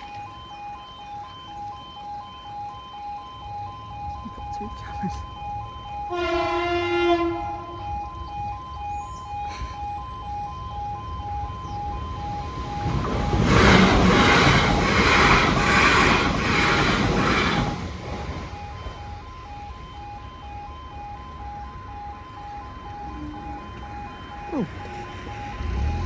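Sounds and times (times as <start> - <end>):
level crossing alarm beeping: 0.0 - 26.0
train passing on rails: 3.8 - 8.7, 10.0 - 26.0
train horn: 6.1 - 8.0, 23.0 - 23.7.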